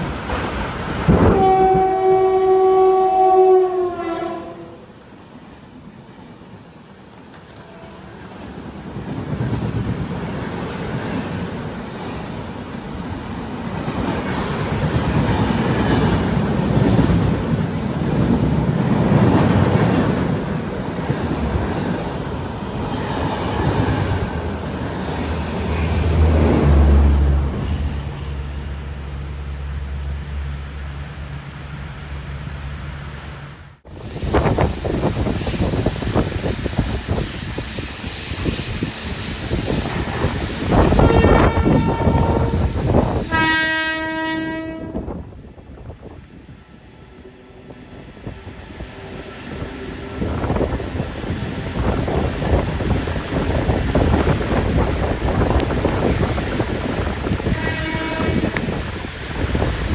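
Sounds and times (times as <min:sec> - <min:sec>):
rain: 0:00.0 - 0:45.1, 0:48.0 - 0:59.9
train passing: 0:00.0 - 0:59.9
wind: 0:00.0 - 0:59.9
train horn blast: 0:01.1 - 0:04.9, 0:40.7 - 0:45.2, 0:57.3 - 0:58.8
heavy rain: 0:33.8 - 0:44.8, 0:49.1 - 0:59.9.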